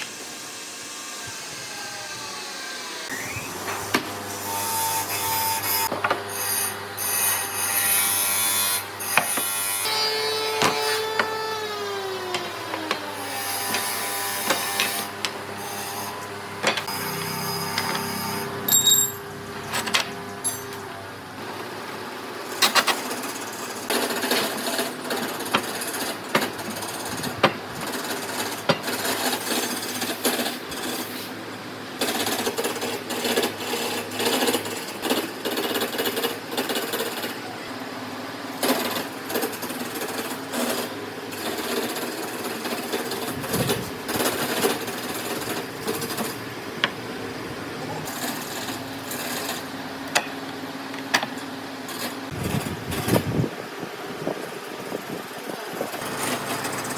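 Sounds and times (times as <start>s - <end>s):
fast mechanical rattle: 54.8s - 56.9s.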